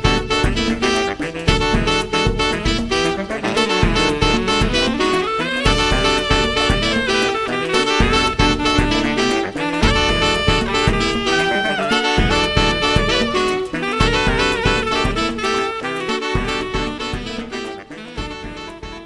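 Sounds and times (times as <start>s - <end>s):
driving bass: 0.0s - 11.5s, 12.2s - 15.6s, 16.4s - 17.5s
jazzy saxophone and brass: 0.0s - 19.0s.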